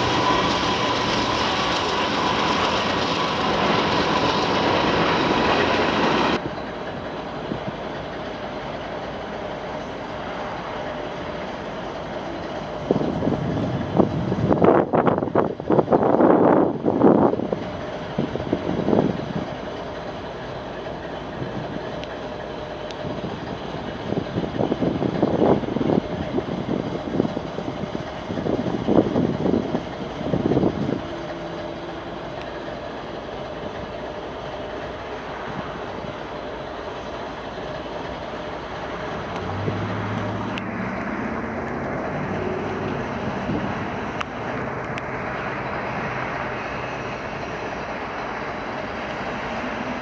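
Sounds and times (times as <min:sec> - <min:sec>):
freight train rumbling on rails: 0:00.0 - 0:50.0.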